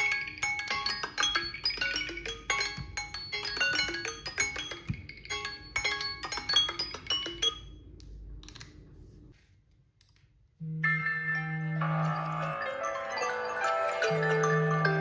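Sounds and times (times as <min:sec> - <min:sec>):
phone alarm chime melody: 0:10.6 - 0:15.0.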